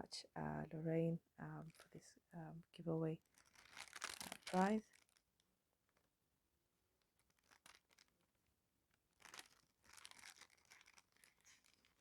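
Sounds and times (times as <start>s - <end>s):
paper and packaging rustling: 3.2s - 5.2s, 7.2s - 8.2s, 9.1s - 12.0s.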